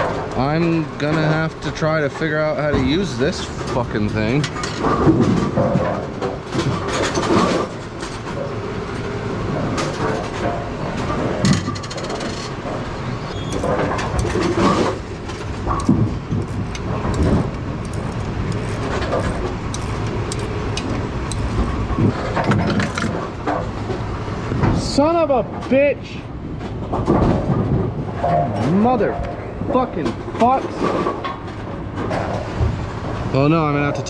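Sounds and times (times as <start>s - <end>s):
machinery rumble: 0.0s - 34.0s.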